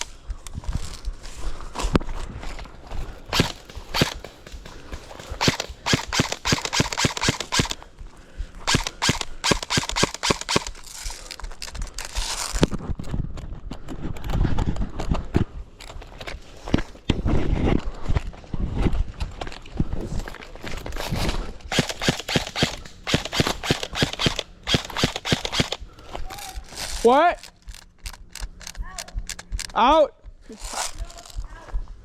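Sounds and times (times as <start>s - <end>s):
airsoft gun rapid shots: 3.3s - 4.6s, 5.2s - 7.8s, 8.7s - 10.8s, 21.7s - 25.9s.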